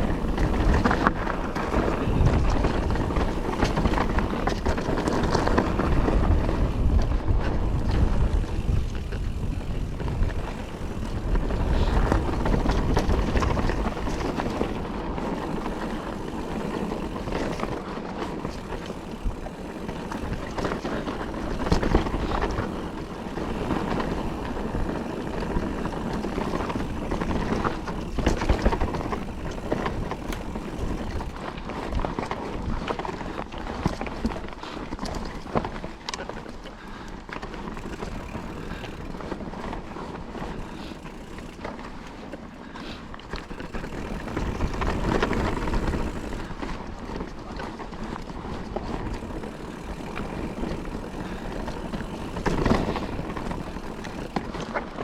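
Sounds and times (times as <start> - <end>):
wind on microphone: 0.0 - 35.8
bike knocks and rattles: 0.0 - 55.0
tyre noise on dirt: 0.0 - 55.0.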